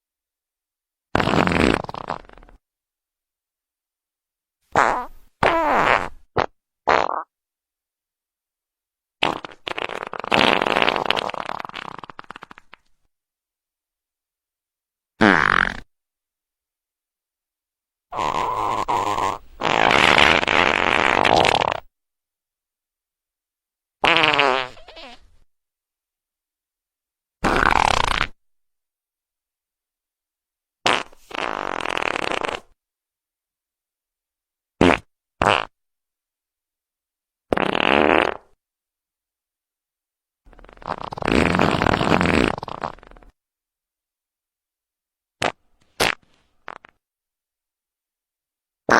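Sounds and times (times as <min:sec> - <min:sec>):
wet fart sound effect: 0:01.1 - 0:02.6, 0:04.7 - 0:07.3, 0:09.2 - 0:12.9, 0:15.2 - 0:15.9, 0:18.1 - 0:21.9, 0:24.0 - 0:25.4, 0:27.4 - 0:28.4, 0:30.8 - 0:32.8, 0:34.8 - 0:35.8, 0:37.5 - 0:38.6, 0:40.5 - 0:43.4, 0:45.4 - 0:47.0.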